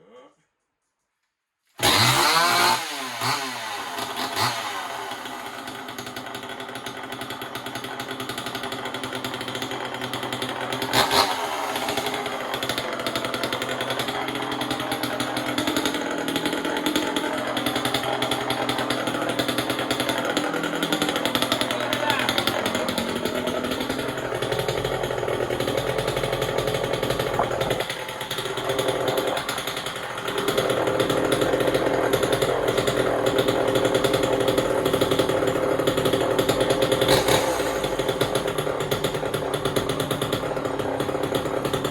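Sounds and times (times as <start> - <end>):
chainsaw running: 1.8 - 41.9.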